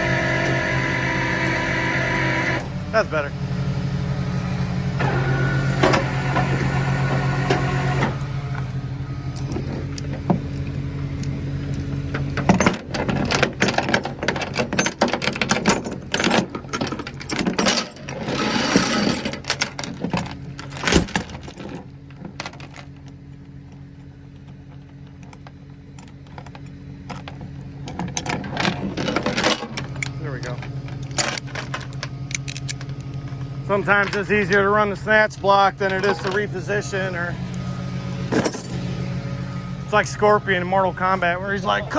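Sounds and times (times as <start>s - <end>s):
tow truck winching hum: 0.0s - 41.9s
metallic clanking and jingling: 9.3s - 23.2s, 24.8s - 40.2s.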